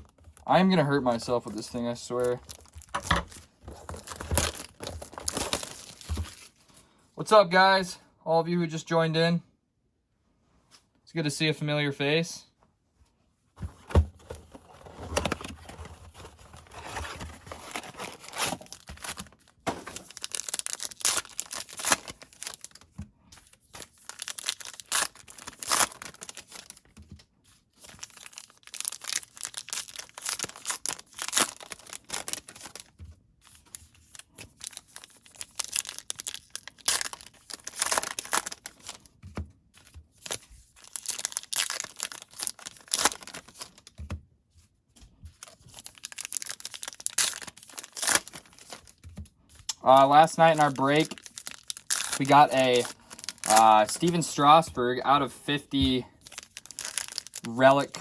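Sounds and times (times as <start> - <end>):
card pack wrappers tearing: 0.0 - 6.5, 14.4 - 26.9, 27.8 - 32.9, 33.5 - 39.1, 39.8 - 43.9, 45.4 - 49.0, 49.6 - 54.6, 55.8 - 58.0
wrapper crinkling: 1.2 - 6.6, 14.6 - 26.9, 27.8 - 32.9, 33.5 - 39.1, 39.8 - 43.9, 45.4 - 49.0, 49.6 - 54.7, 55.8 - 58.0.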